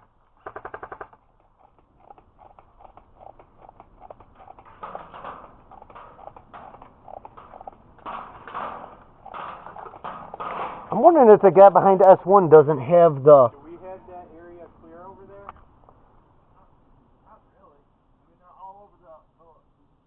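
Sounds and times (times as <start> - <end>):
airsoft gun firing full auto: 0.4 - 1.2.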